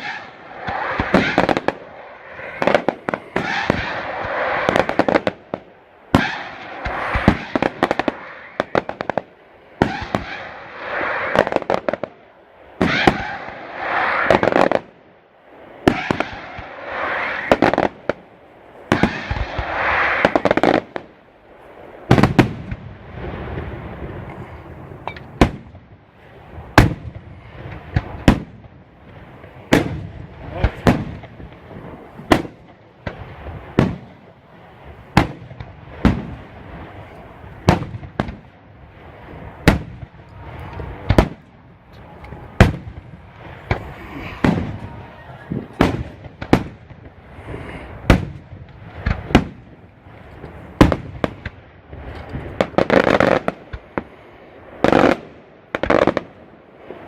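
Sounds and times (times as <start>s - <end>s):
firework bangs with rumbling echo: 0.0s - 15.0s, 15.8s - 21.2s, 21.9s - 57.0s
firework crackle: 0.0s - 57.0s.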